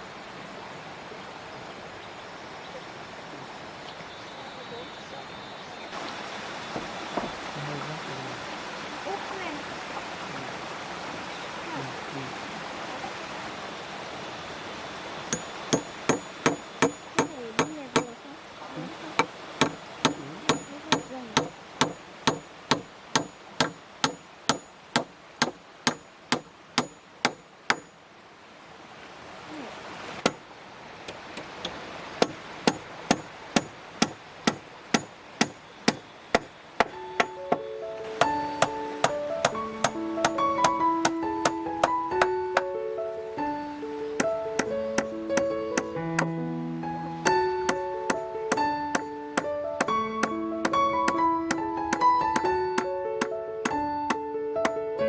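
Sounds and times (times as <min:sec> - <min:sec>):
hammer driving nails: 0:15.3 - 0:18.1, 0:19.2 - 0:27.9, 0:31.1 - 0:37.6, 0:48.1 - 0:50.8.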